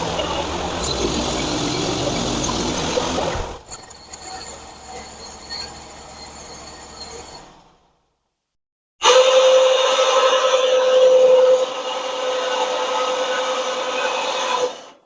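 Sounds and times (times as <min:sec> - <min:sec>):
band sawmill running: 0:00.0 - 0:03.8, 0:09.0 - 0:14.9.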